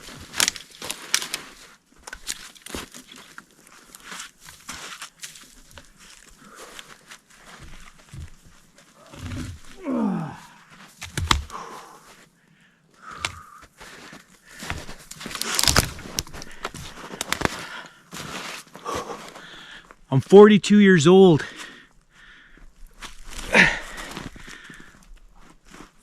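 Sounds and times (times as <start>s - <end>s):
footsteps crunching brush: 0.0s - 9.8s, 13.7s - 19.5s
man grunting and groaning: 9.0s - 10.6s, 23.4s - 24.1s.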